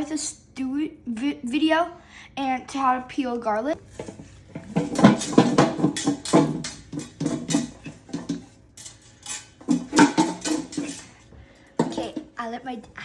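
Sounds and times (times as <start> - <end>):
garlic cloves rattling in bowls: 3.9 - 11.2.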